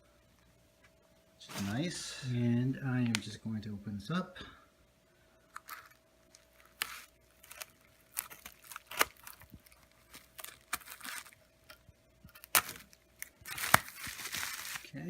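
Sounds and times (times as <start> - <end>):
packing rustling: 1.4 - 1.8, 5.6 - 11.5, 12.3 - 15.0
cardboard clicks and snaps: 12.3 - 14.8.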